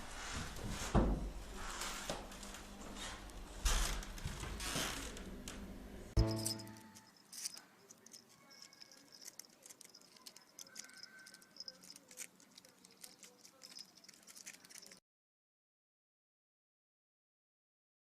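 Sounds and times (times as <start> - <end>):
light clicks and pattering: 6.8 - 15.0.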